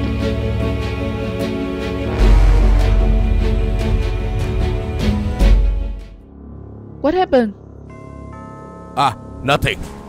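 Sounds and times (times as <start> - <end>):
dramatic music with heavy bass: 0.0 - 6.9
sharp percussion hits: 2.0 - 6.2.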